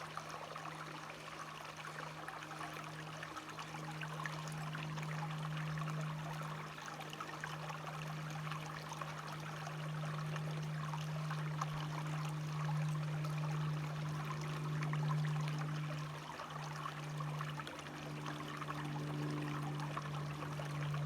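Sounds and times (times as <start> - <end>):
stream trickling and splashing: 0.0 - 21.0
low hum: 10.8 - 21.0.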